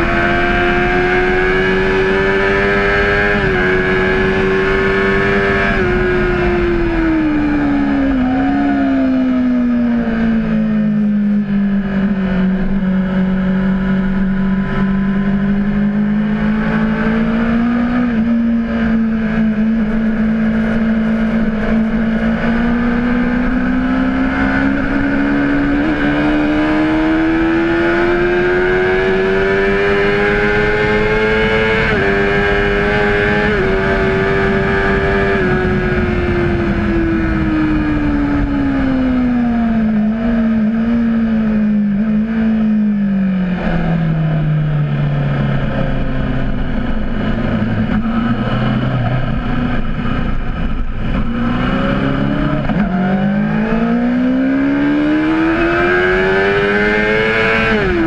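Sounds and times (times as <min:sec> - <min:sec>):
motorcycle engine revving: 0:00.0 - 0:58.0
steady rushing noise: 0:30.0 - 0:58.0.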